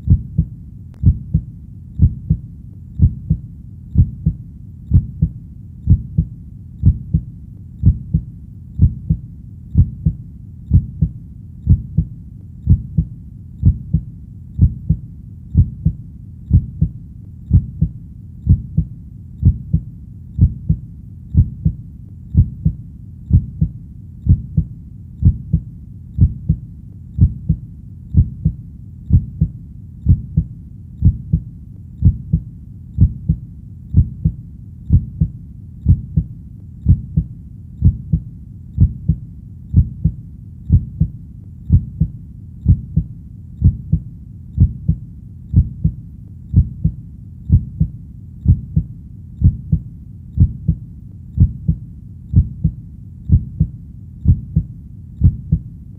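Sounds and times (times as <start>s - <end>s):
heartbeat double thump: 0.1s - 2.4s, 3.0s - 3.4s, 4.0s - 9.2s, 9.8s - 12.1s, 12.7s - 15.0s, 15.6s - 20.8s, 21.4s - 21.8s, 22.4s - 23.7s, 24.3s - 25.6s, 26.2s - 26.6s, 27.2s - 27.6s, 28.2s - 29.5s, 32.0s - 32.4s, 33.0s - 33.4s, 34.0s - 35.3s, 35.9s - 38.2s, 38.8s - 41.1s, 41.7s - 44.0s, 44.6s - 49.8s, 50.4s - 50.8s, 51.4s - 55.7s.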